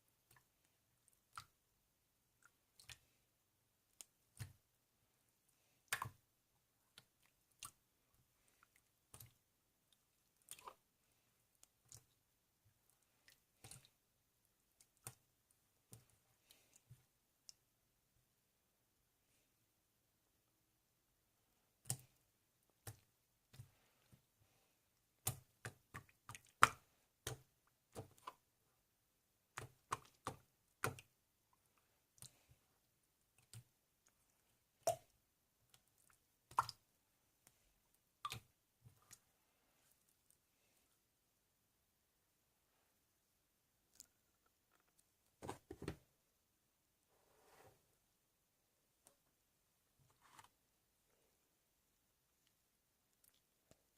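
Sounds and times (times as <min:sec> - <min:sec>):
faint clicks and light taps: 0:52.4 - 0:53.9.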